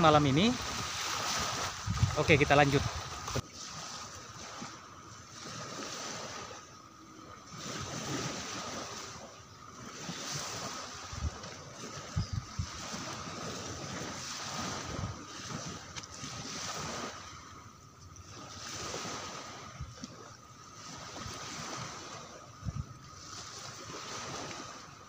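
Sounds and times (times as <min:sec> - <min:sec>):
wind buffeting microphone: 0:00.0 - 0:03.4, 0:09.8 - 0:17.3, 0:21.0 - 0:23.2
sea waves washing onto beach: 0:00.0 - 0:06.7, 0:07.3 - 0:25.0.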